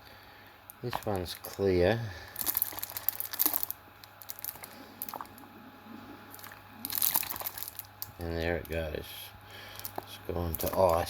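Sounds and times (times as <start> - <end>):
plastic bottle crinkling: 2.3 - 5.4, 6.3 - 8.8, 9.7 - 11.0.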